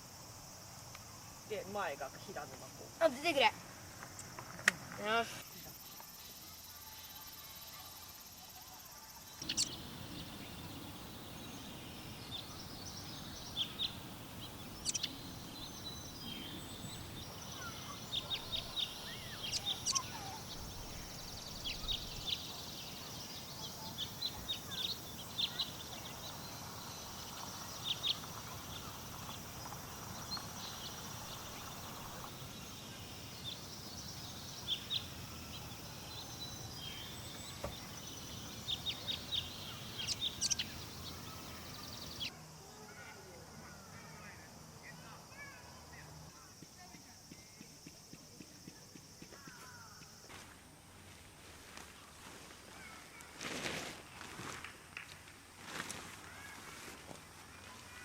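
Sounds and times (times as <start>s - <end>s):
small songbirds chirping: 5.0s - 42.4s.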